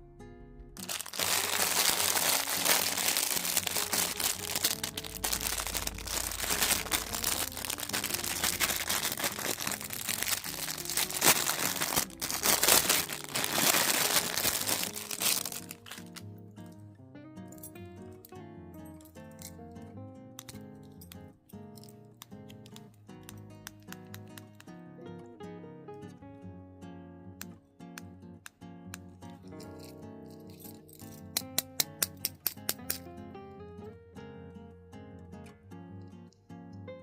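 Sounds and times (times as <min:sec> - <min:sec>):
faint acoustic guitar music: 0:00.0 - 0:37.0
packaging crinkling: 0:00.8 - 0:16.2.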